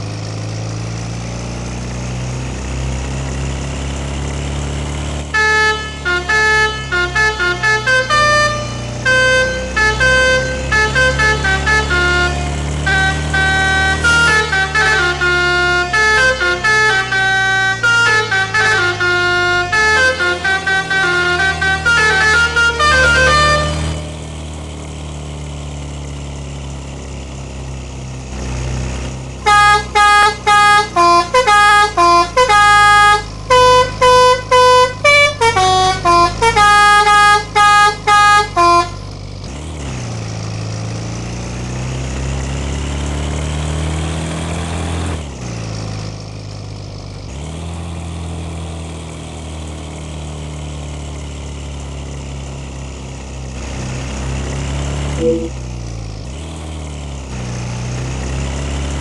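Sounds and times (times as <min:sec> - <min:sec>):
bus engine running: 0:00.0 - 0:59.0
multi-tone air horn tune: 0:05.3 - 0:24.2, 0:29.4 - 0:39.1, 0:55.2 - 0:55.6.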